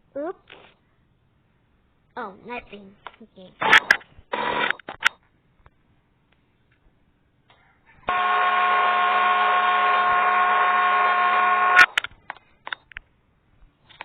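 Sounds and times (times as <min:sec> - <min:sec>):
horn-like buzzing tone: 0:08.1 - 0:12.0.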